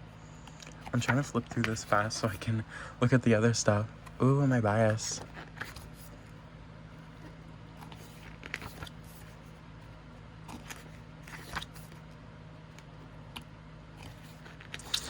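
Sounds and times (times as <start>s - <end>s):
steady low hum: 0.0s - 15.0s
paper pages rustling: 0.5s - 2.5s, 4.0s - 6.4s, 7.0s - 9.6s, 10.5s - 12.2s.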